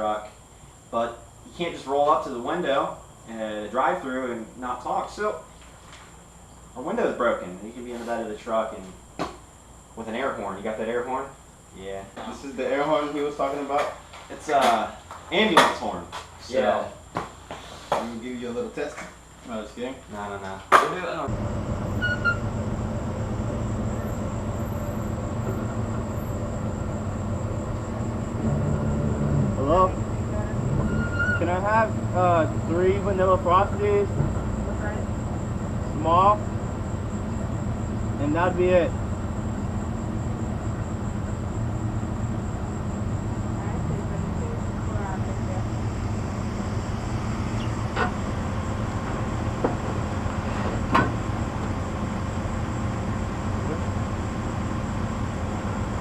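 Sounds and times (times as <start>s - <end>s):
truck engine running: 21.3s - 56.0s.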